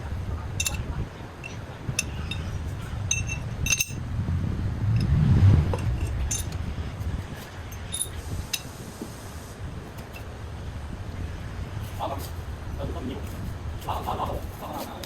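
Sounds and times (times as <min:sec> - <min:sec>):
low rumble: 0:00.0 - 0:09.1
metallic clinks of steel pieces: 0:00.6 - 0:04.0, 0:05.8 - 0:06.6, 0:07.7 - 0:08.7.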